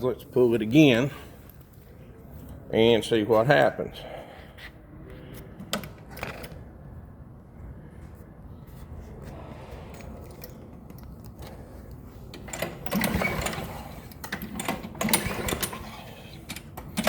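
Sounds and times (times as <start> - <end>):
mower engine pull-start cranking: 12.3 - 17.0.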